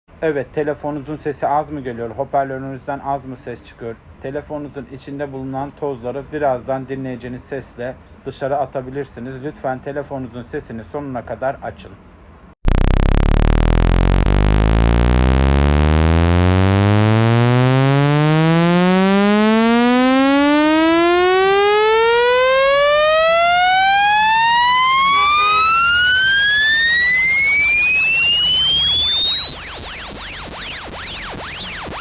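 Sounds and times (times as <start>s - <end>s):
rising buzzy tone from phone speaker: 12.6s - 32.0s.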